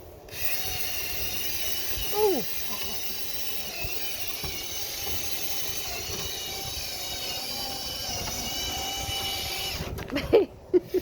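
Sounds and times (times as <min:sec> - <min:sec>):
cordless drill whine: 0:00.3 - 0:10.1.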